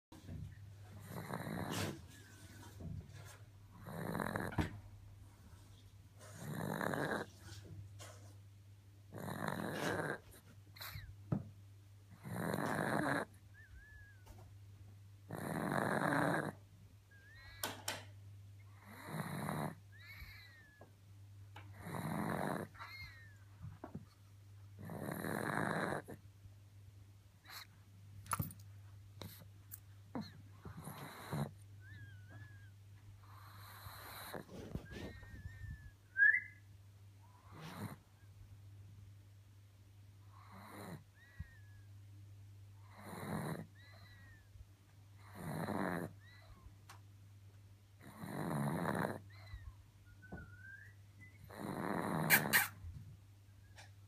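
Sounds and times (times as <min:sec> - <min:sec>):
dog snoring: 0:01.0 - 0:02.1, 0:03.7 - 0:04.8, 0:06.2 - 0:07.3, 0:09.1 - 0:11.1, 0:12.1 - 0:14.0, 0:15.3 - 0:16.6, 0:18.7 - 0:20.8, 0:21.7 - 0:23.3, 0:24.8 - 0:26.2, 0:27.4 - 0:27.7, 0:30.1 - 0:35.5, 0:37.5 - 0:38.0, 0:40.2 - 0:41.6, 0:42.8 - 0:44.4, 0:45.2 - 0:46.5, 0:48.0 - 0:49.6, 0:51.3 - 0:52.8
dog snorting and snuffling: 0:01.0 - 0:02.5, 0:03.2 - 0:04.8, 0:06.2 - 0:08.2, 0:09.1 - 0:11.1, 0:12.2 - 0:13.3, 0:15.3 - 0:16.6, 0:18.8 - 0:20.4, 0:21.7 - 0:23.1, 0:24.8 - 0:26.2, 0:30.2 - 0:31.6, 0:33.2 - 0:35.4, 0:37.5 - 0:38.0, 0:42.9 - 0:43.7, 0:45.2 - 0:46.1, 0:48.0 - 0:49.2, 0:51.5 - 0:52.8
thin whistling wheeze: 0:34.8 - 0:36.6, 0:50.0 - 0:51.6.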